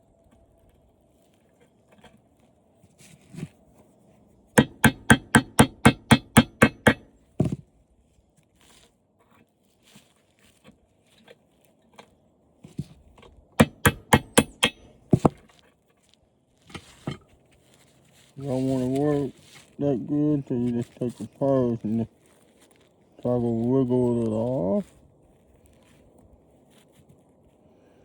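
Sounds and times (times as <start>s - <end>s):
hammer striking television: 4.6s - 7.1s, 13.6s - 15.4s.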